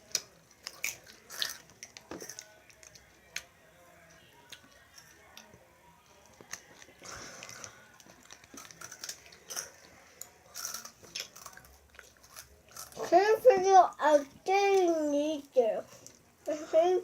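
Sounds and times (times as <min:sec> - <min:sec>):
candy chewing: 0:00.0 - 0:03.5, 0:04.4 - 0:13.2.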